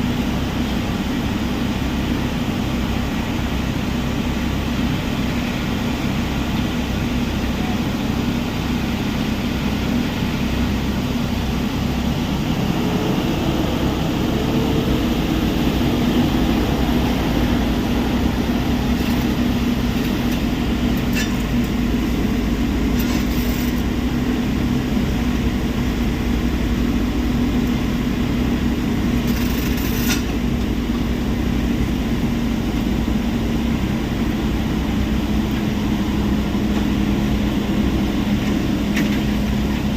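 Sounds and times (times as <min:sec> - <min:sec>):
heavy machinery engine drone: 0:00.0 - 0:39.9.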